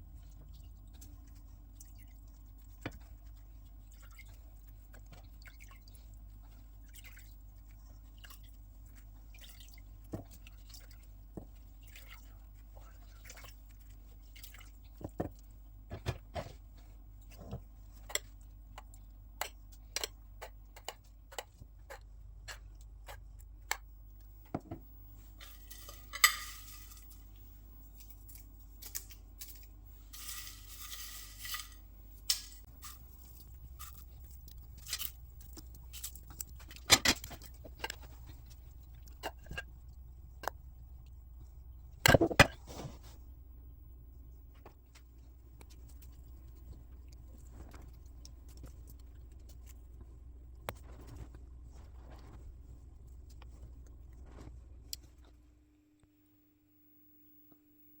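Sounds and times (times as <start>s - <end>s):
dishes and utensils clinking: 25.4s - 27.2s.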